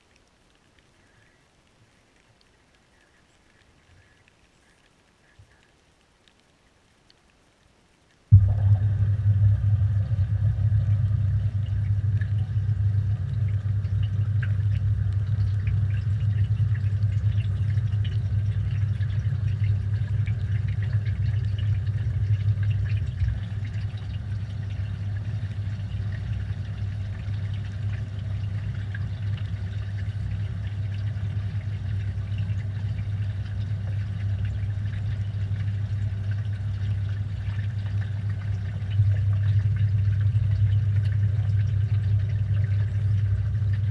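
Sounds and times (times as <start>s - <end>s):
washing machine motor hum: 8.3s - 43.9s
water and suds swishing: 8.4s - 38.6s.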